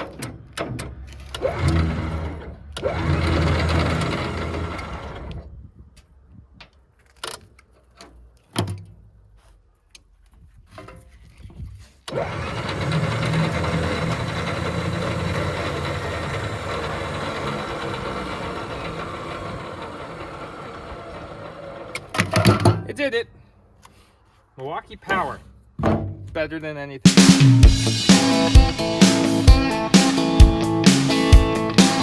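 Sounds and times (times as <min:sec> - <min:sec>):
motor running with low hum: 0:01.4 - 0:05.4, 0:12.1 - 0:22.1.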